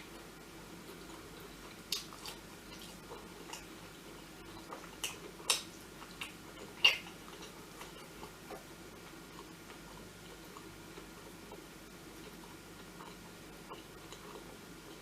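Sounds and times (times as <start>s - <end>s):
food crunching: 0.8s - 15.0s
mouth clicks of chewing: 1.7s - 3.7s, 4.7s - 8.7s.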